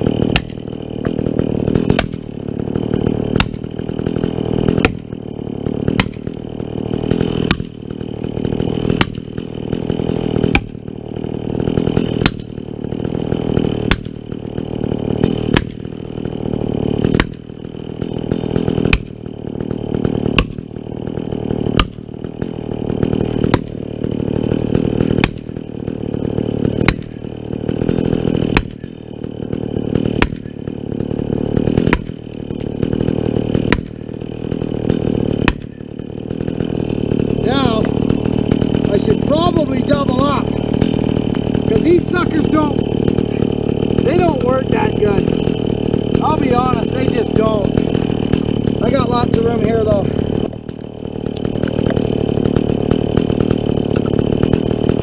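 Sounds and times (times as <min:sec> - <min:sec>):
chainsaw engine running: 0:00.0 - 0:55.0
sharp knocks: 0:05.9 - 0:06.4, 0:13.8 - 0:14.2.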